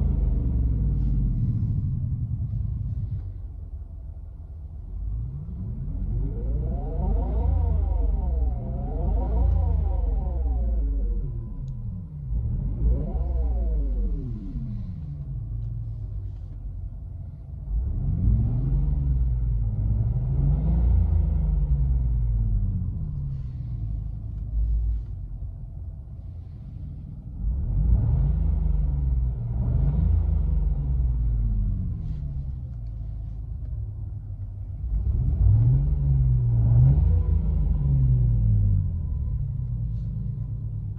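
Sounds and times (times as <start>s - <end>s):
synthetic engine rumble revving: 0.0s - 40.9s
synthesised engine sound: 5.1s - 16.0s.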